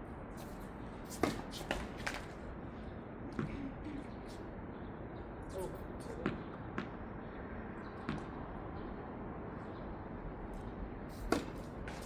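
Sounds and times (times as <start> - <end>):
tennis ball struck by racket: 1.1 - 2.2, 11.3 - 12.0.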